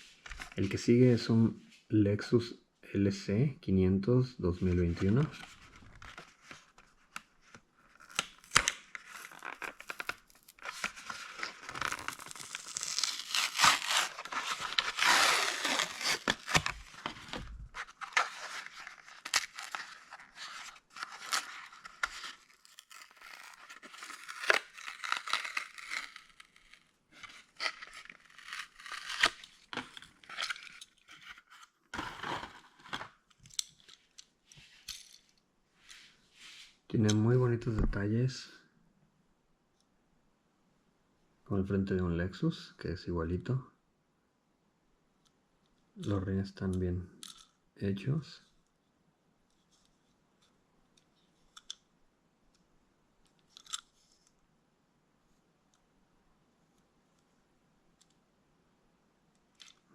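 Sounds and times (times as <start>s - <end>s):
packaging tearing and crinkling: 7.9s - 33.1s.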